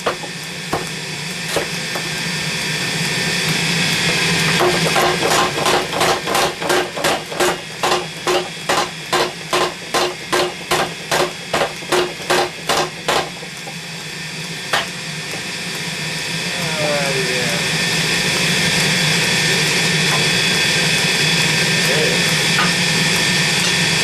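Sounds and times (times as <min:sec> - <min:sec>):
steady hum: 0:00.0 - 0:24.0
hammer striking steel on anvil: 0:04.6 - 0:13.3, 0:22.6 - 0:22.8.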